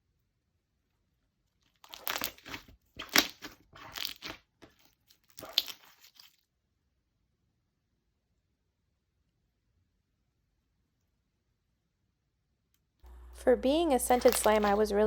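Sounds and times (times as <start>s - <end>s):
slime squished crunching and popping: 1.8s - 6.4s, 14.1s - 14.8s.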